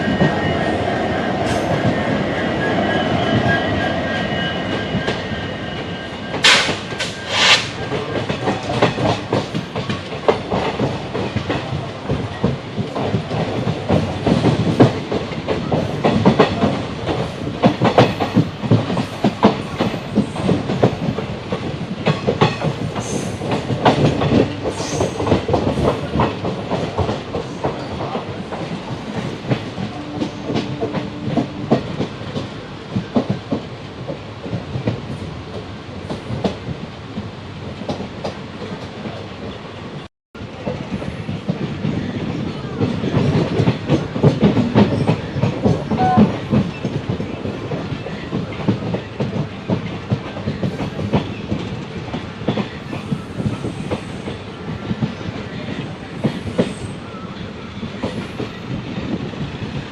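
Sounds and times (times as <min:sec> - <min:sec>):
train wheels clattering over joints: 0:04.7 - 0:36.7, 0:40.6 - 0:56.9
locomotive air hisses: 0:06.5 - 0:07.8.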